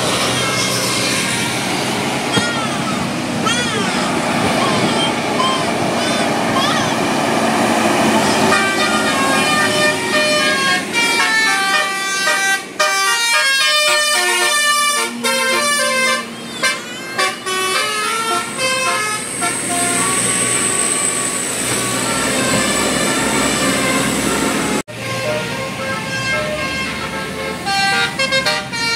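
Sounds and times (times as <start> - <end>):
multi-tone horn playing a tune: 8.2 - 20.7, 21.8 - 28.9.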